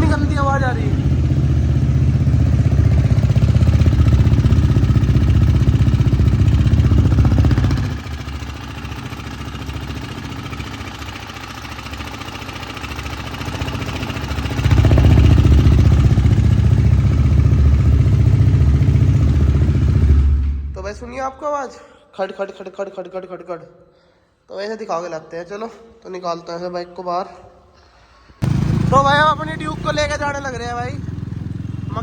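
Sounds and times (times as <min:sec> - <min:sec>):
motorcycle engine idling: 0:00.0 - 0:20.8, 0:28.4 - 0:32.0
engine rattling: 0:00.0 - 0:21.0, 0:28.4 - 0:32.0.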